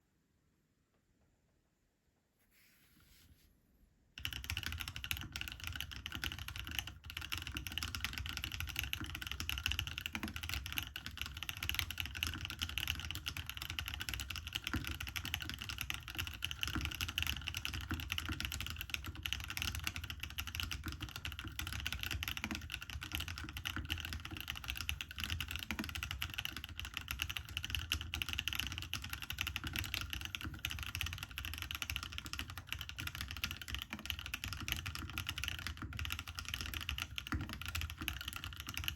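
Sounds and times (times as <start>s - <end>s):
mechanical keyboard typing: 4.2s - 38.9s.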